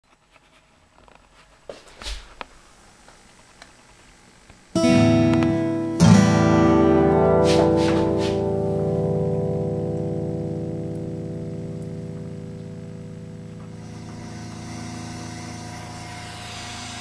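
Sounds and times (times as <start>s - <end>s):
acoustic guitar chord strummed: 4.7s - 17.0s
faint taps on guitar: 7.3s - 8.5s.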